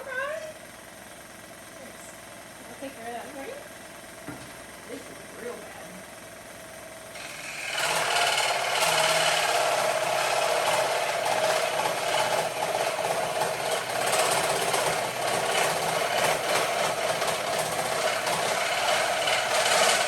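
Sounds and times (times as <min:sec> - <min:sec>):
scroll saw cutting wood: 0:07.1 - 0:20.0.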